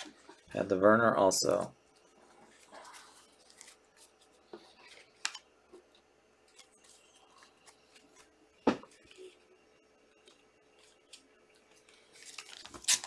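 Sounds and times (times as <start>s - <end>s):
cards rustling and clicking: 10.2s - 13.0s.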